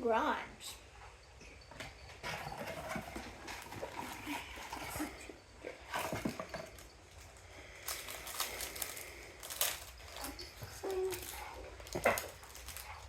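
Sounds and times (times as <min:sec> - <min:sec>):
cards and foil rustling: 0:05.8 - 0:13.0.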